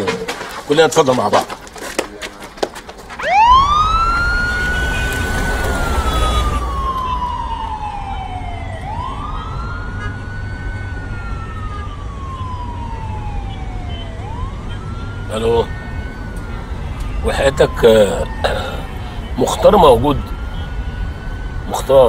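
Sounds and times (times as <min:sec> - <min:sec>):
police siren wailing: 0:03.1 - 0:22.0.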